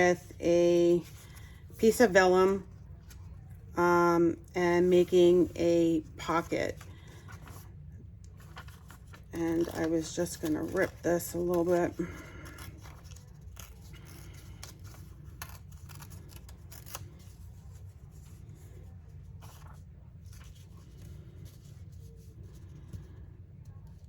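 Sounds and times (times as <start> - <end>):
paper rustling and clicking: 6.8 - 18.4.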